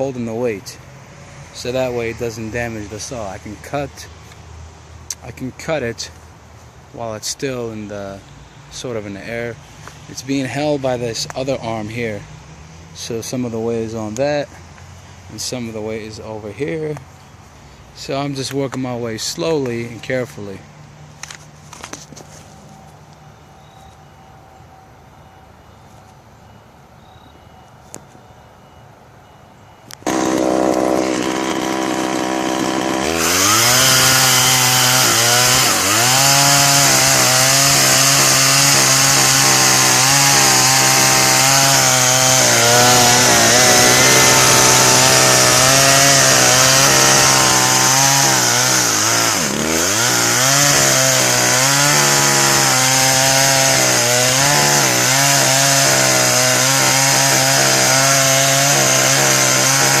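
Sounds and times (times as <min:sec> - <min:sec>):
chainsaw cutting wood: 0:30.0 - 1:00.0.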